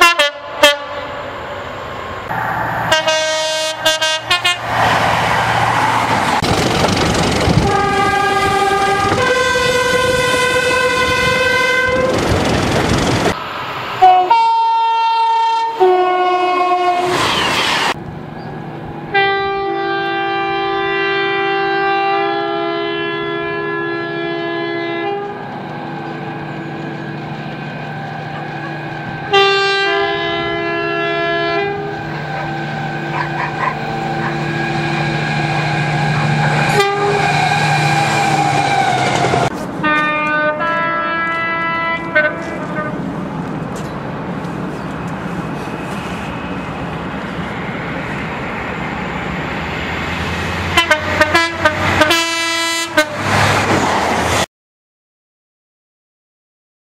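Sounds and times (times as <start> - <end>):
held train horn chord: 0.0 - 1.2, 2.9 - 4.7, 7.6 - 12.2, 14.0 - 17.2, 19.1 - 25.5, 29.0 - 43.1, 50.7 - 53.3
two-tone train horn blasts: 0.0 - 1.2, 2.9 - 4.7, 7.6 - 12.3, 14.0 - 17.2, 19.1 - 25.5, 29.1 - 43.1, 50.7 - 53.4.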